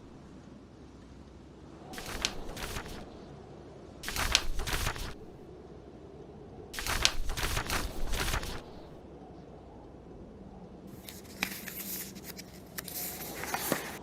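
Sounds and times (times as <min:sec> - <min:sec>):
snowstorm wind: 0:00.0 - 0:11.1
book pages turning: 0:02.0 - 0:03.1, 0:04.0 - 0:05.4, 0:06.8 - 0:09.0, 0:11.0 - 0:14.0.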